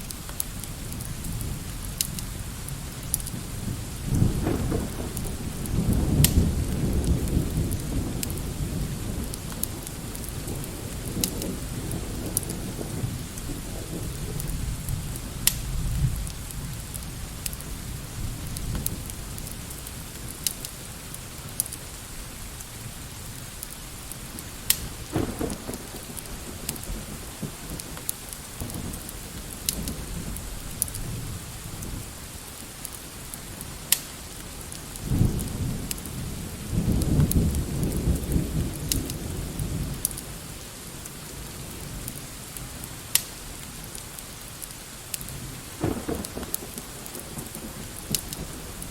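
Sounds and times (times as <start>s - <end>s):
steady rain: 0.0s - 48.9s
wood fire crackling: 0.0s - 48.9s
distant thunder rumbling: 3.3s - 19.5s, 24.3s - 32.1s, 35.0s - 40.6s, 45.3s - 48.9s.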